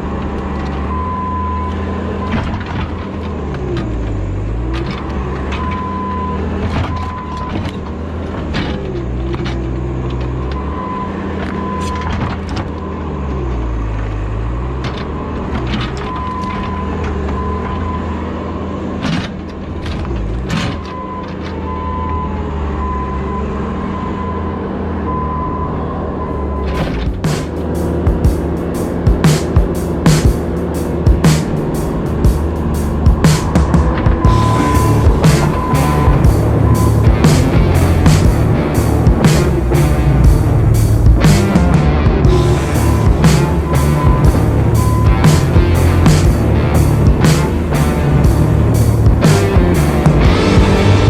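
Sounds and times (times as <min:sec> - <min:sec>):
skid steer loader engine: 0:00.0 - 0:51.0
short high beeps: 0:34.3 - 0:37.1, 0:43.6 - 0:45.9.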